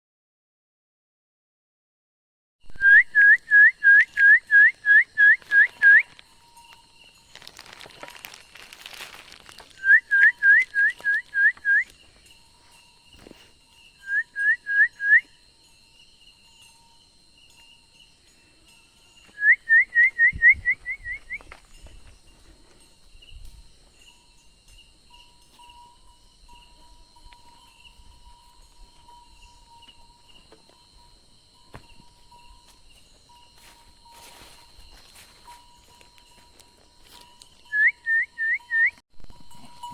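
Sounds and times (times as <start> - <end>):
short rising whistled notes: 9.8 - 11.9, 19.4 - 21.5.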